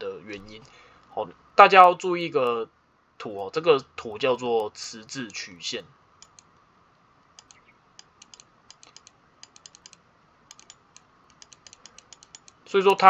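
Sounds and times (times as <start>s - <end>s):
typing on keyboard: 7.4s - 12.6s.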